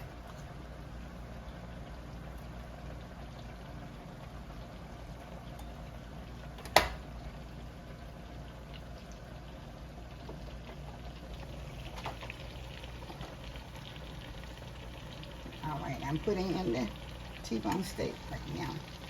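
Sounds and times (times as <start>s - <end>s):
meat sizzling in a skillet: 10.8s - 19.0s.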